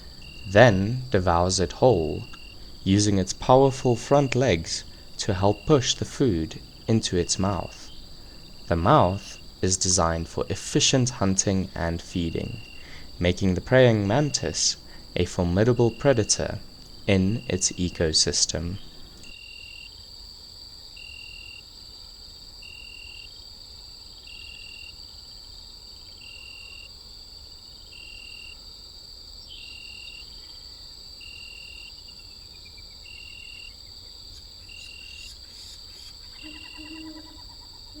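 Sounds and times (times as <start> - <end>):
faint bird calls: 0.0 - 19.4, 34.7 - 38.0
insect chirp: 0.0 - 38.0
insects trilling: 0.0 - 38.0.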